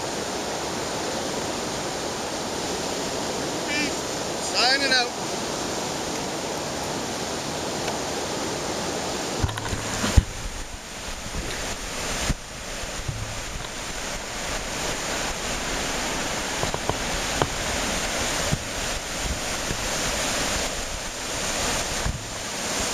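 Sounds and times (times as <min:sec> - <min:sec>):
river water rushing: 0:00.0 - 0:22.9
wind buffeting microphone: 0:08.5 - 0:22.9.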